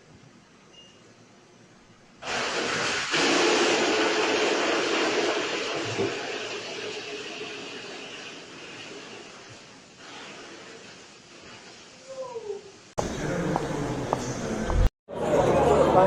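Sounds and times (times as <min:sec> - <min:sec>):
loud rushing hiss: 0:02.2 - 0:12.0.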